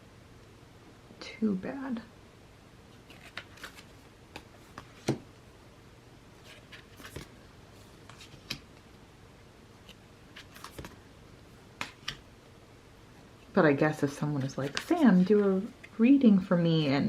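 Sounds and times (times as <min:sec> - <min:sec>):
cards rustling: 0:02.9 - 0:05.3, 0:06.4 - 0:08.8, 0:09.8 - 0:11.1, 0:11.7 - 0:12.2, 0:14.0 - 0:16.0
cards tapping and clicking: 0:03.1 - 0:05.3, 0:11.8 - 0:12.2.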